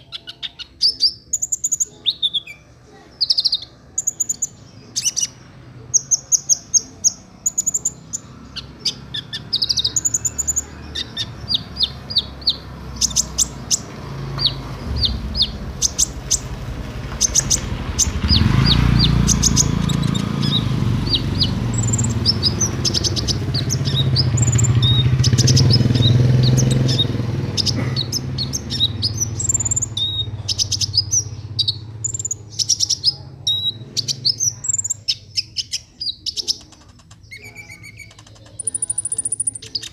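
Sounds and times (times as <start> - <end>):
sunbird singing high chirps and trills: 0.0 - 39.9
low drone: 14.0 - 23.5.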